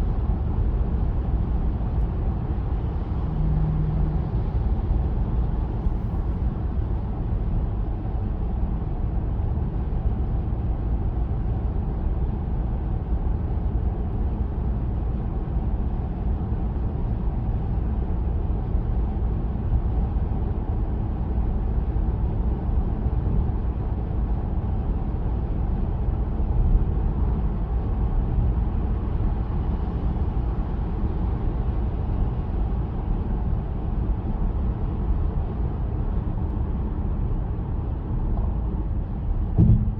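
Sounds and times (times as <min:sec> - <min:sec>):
car cabin road and engine rumble: 0:00.0 - 0:39.9.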